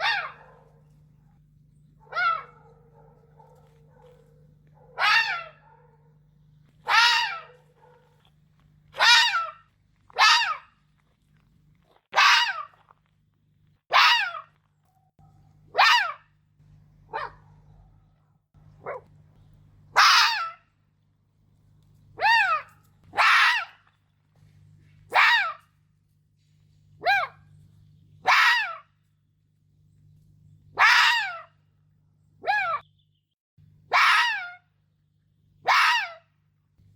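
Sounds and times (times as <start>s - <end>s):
fox barking: 0.0s - 1.4s, 2.0s - 6.2s, 6.8s - 8.3s, 8.9s - 10.8s, 12.1s - 12.8s, 13.9s - 14.6s, 15.2s - 16.3s, 17.1s - 18.2s, 18.8s - 19.1s, 19.9s - 20.7s, 22.2s - 23.9s, 25.1s - 25.7s, 27.0s - 27.4s, 28.2s - 28.9s, 30.8s - 31.6s, 32.4s - 32.8s, 33.9s - 34.6s, 35.6s - 36.3s.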